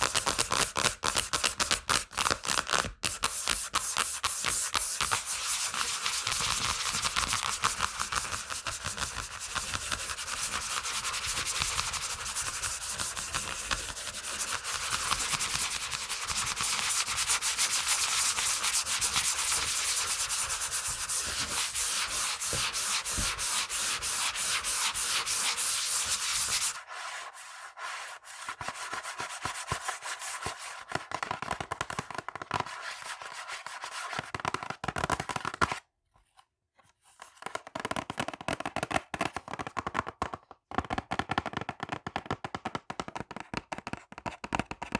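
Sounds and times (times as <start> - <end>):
light scratching and tapping: 4.8 - 26.8
fingernails scratching a surface: 10.3 - 28.4.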